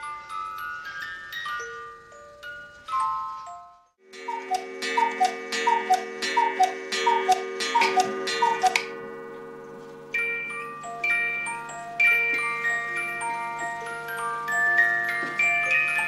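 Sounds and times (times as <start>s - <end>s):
music box tune: 0.0s - 16.0s
ringing gong strike: 4.1s - 9.8s
cuckoo clock calls: 4.1s - 16.0s.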